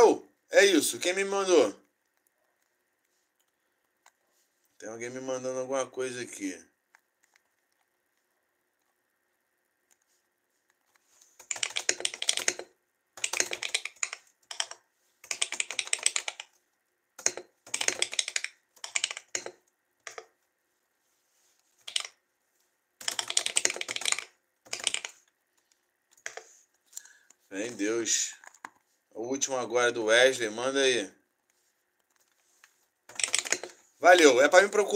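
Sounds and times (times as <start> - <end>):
typing on computer keyboard: 11.4 - 16.6, 17.2 - 20.3, 21.8 - 22.2, 23.0 - 25.3, 33.1 - 33.8.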